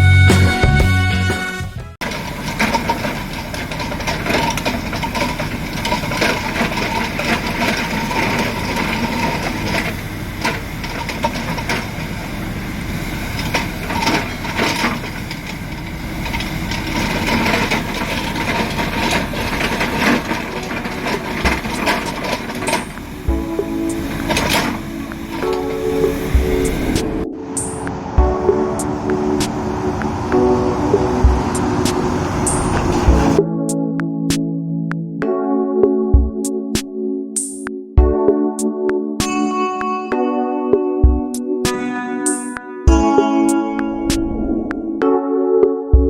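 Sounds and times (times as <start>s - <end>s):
construction engine running: 2.0s - 33.4s
sharp knocks and clanks: 16.2s - 30.2s.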